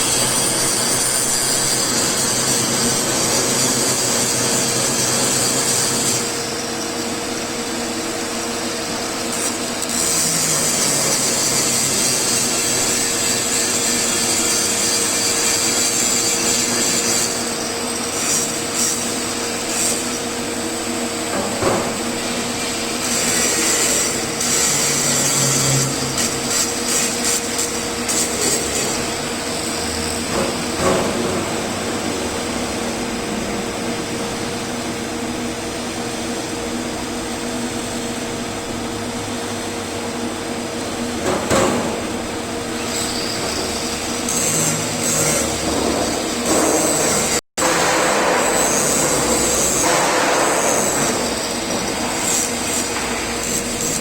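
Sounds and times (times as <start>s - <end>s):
welding arc hissing: 0.0s - 7.5s, 8.9s - 21.1s, 21.8s - 30.9s, 42.2s - 54.0s.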